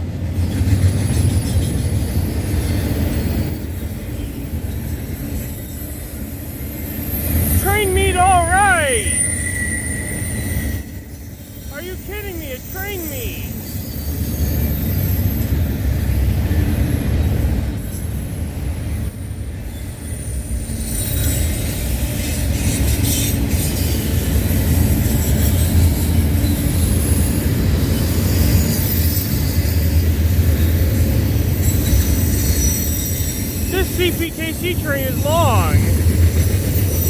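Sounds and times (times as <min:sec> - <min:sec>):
train wheel squeal: 0:09.6 - 0:11.2.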